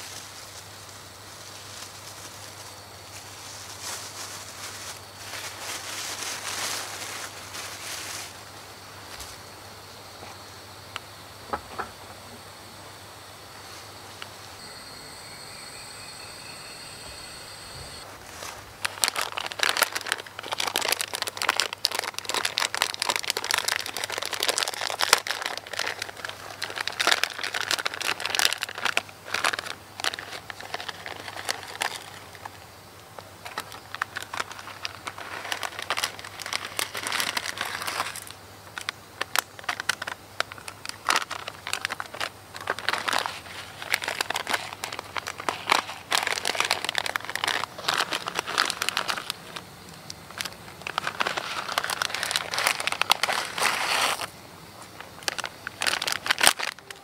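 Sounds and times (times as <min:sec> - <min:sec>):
plastic crinkling: 0:01.4 - 0:08.5, 0:18.0 - 0:32.6, 0:33.3 - 0:54.3, 0:54.9 - 0:57.0.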